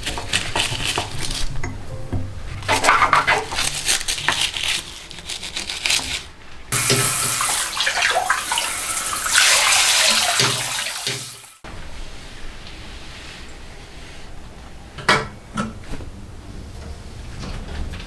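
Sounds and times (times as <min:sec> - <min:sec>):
light clattering and splashing: 0:00.0 - 0:11.6
water running from a tap: 0:06.7 - 0:11.6.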